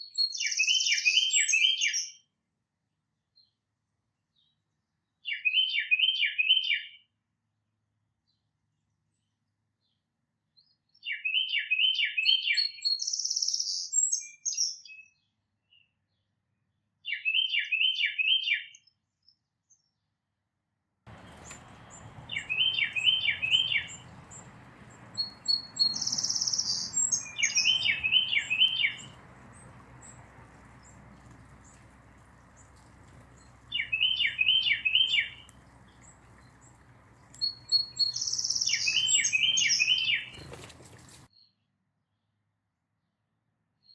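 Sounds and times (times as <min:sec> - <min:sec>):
faint background hiss: 0:21.1 - 0:41.3
songbird chirping: 0:21.1 - 0:41.3.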